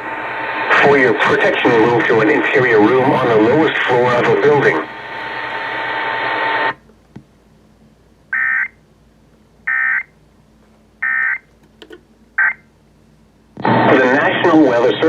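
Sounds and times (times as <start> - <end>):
radio hiss: 0.0 - 6.8, 13.6 - 15.0.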